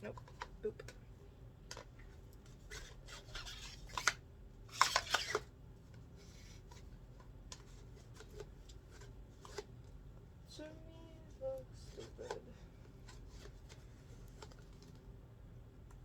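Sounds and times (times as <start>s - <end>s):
rubbing and rustling of chair parts: 1.8s - 10.0s.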